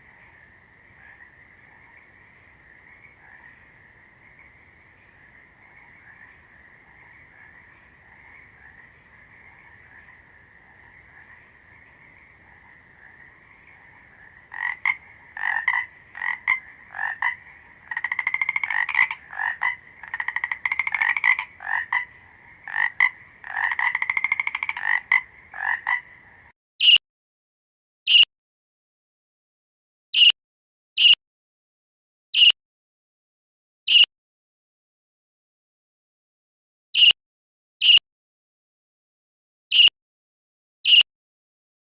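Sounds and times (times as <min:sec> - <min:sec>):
distant frog chorus: 0:00.0 - 0:26.5
nearby frog croaking loudly: 0:05.7 - 0:27.0, 0:33.9 - 0:34.1.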